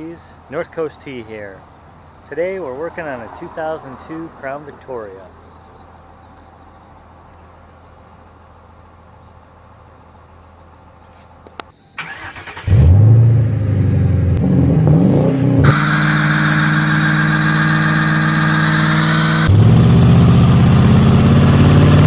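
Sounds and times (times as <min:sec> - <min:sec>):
car engine starting and running: 0:12.0 - 0:22.0.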